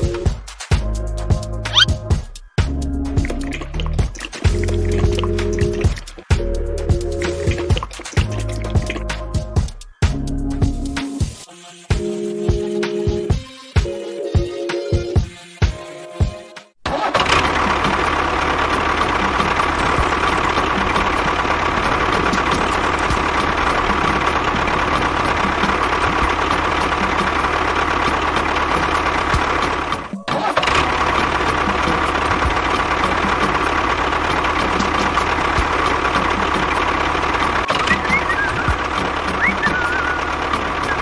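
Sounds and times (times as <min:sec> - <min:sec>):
small motor humming: 0:37.7 - 0:41.0.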